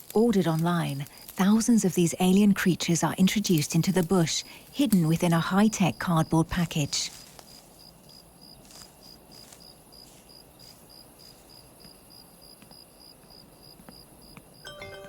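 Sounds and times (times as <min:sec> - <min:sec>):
insect chirping: 0:00.0 - 0:14.7.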